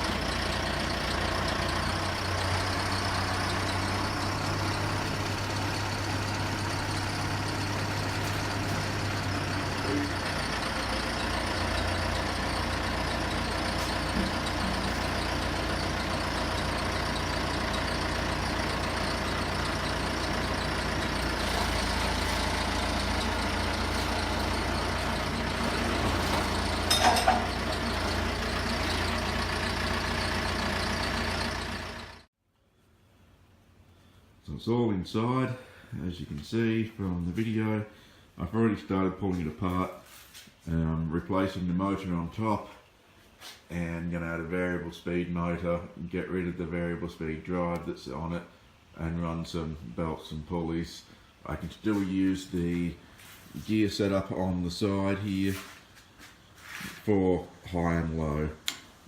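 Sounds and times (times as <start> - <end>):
engine clatter: 0.0 - 32.3
large vehicle engine running: 0.0 - 32.3, 51.5 - 55.8.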